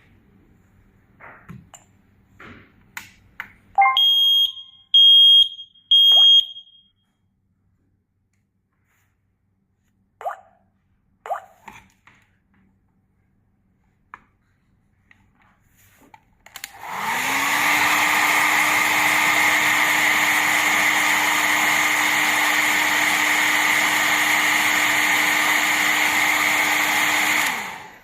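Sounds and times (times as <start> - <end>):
electric fan blowing air: 16.6 - 28.0.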